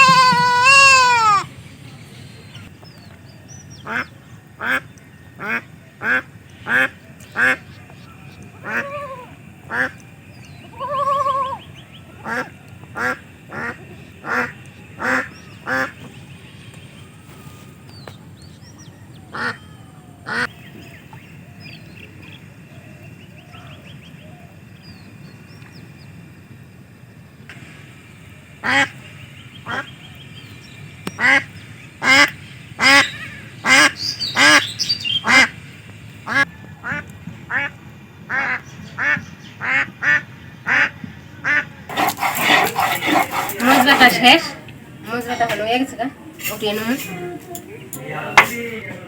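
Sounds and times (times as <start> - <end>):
ducks quacking: 0.0 - 1.6, 3.8 - 16.3, 19.3 - 19.6, 20.2 - 20.6, 28.6 - 29.0, 29.6 - 30.0, 31.2 - 35.6, 36.2 - 45.5
small birds chirping: 0.0 - 26.4, 28.6 - 36.4.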